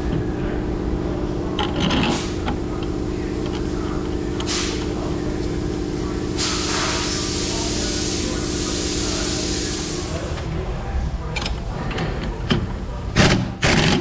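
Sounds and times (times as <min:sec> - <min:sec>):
steady hum: 0:00.0 - 0:14.0
metal parts knocking and scraping: 0:01.6 - 0:02.6
hiss: 0:04.4 - 0:04.9, 0:06.4 - 0:10.2.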